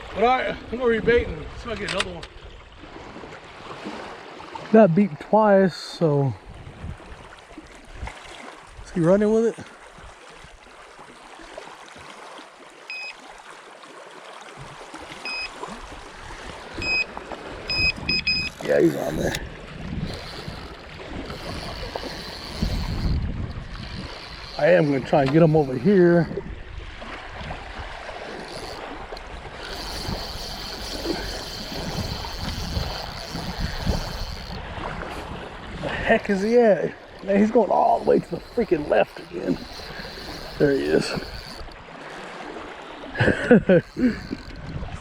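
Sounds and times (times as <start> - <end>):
wind gusts on microphone: 0.0 - 4.1, 6.2 - 9.2, 15.6 - 45.0
water noise: 0.0 - 45.0
bite alarm beeping: 12.9 - 13.2, 15.2 - 15.6, 16.7 - 19.3.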